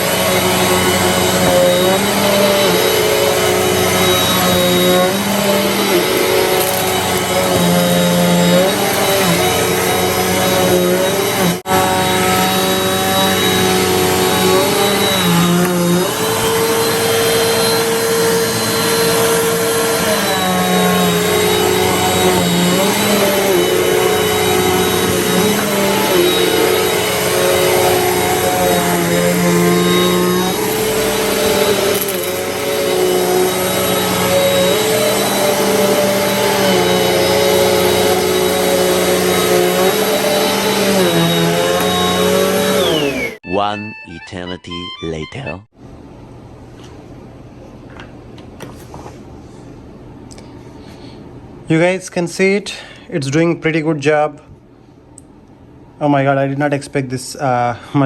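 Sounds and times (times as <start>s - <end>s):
vacuum cleaner motor whine: 0.0s - 43.4s.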